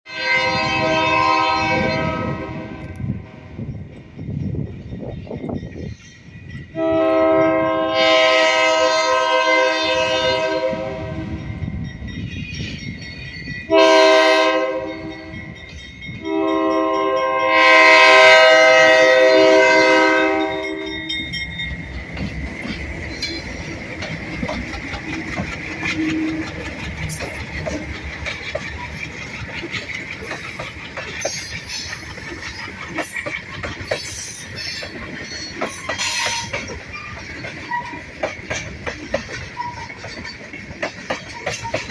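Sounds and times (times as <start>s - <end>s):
locomotive air horn blasts: 0.1s - 3.2s, 6.8s - 11.4s, 13.7s - 15.4s, 16.2s - 21.2s
train rumble: 0.1s - 41.9s
wheels clacking on rail joints: 19.5s - 41.9s.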